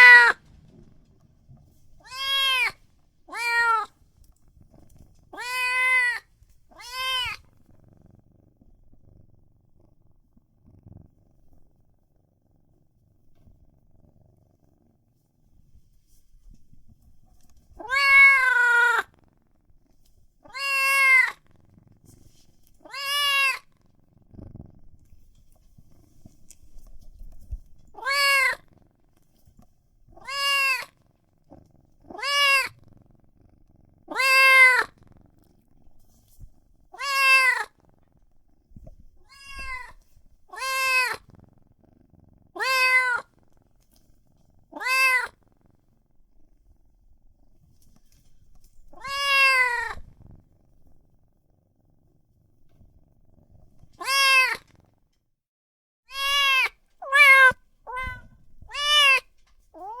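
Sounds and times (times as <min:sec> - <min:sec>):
kitten meowing: 0:00.0 - 0:00.4, 0:02.0 - 0:03.9, 0:05.4 - 0:07.4, 0:17.8 - 0:19.1, 0:20.5 - 0:21.4, 0:22.8 - 0:23.7, 0:28.0 - 0:28.6, 0:30.2 - 0:30.9, 0:32.1 - 0:32.8, 0:34.1 - 0:35.0, 0:37.0 - 0:37.7, 0:39.3 - 0:41.2, 0:42.6 - 0:43.3, 0:44.7 - 0:45.3, 0:49.0 - 0:50.0, 0:54.0 - 0:54.7, 0:56.1 - 1:00.0.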